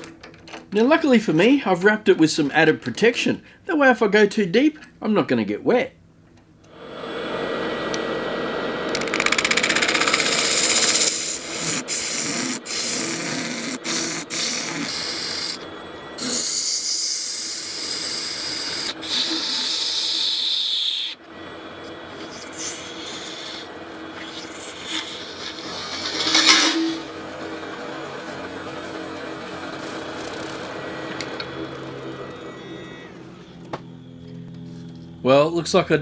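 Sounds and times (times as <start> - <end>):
lathe tool scraping hiss: 6.8 - 33.6.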